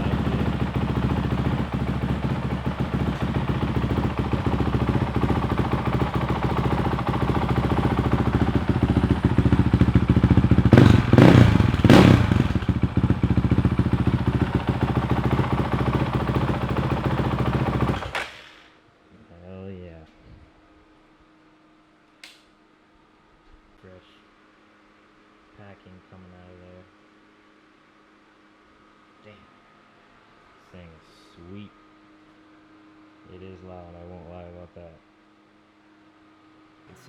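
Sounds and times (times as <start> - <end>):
dirt bike engine idling: 0.0 - 18.5.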